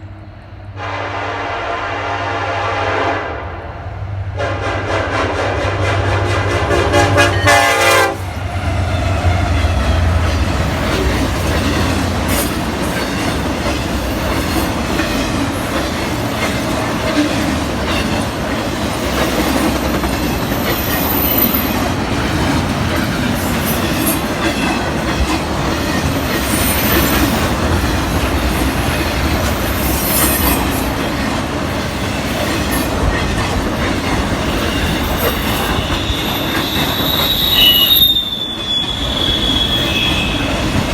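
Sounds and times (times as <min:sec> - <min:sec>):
train horn: 0:00.8 - 0:03.6, 0:04.3 - 0:10.0, 0:34.5 - 0:40.9
train wheels clattering on rails: 0:06.6 - 0:40.9
high-pitched wheel squeals: 0:34.5 - 0:40.8.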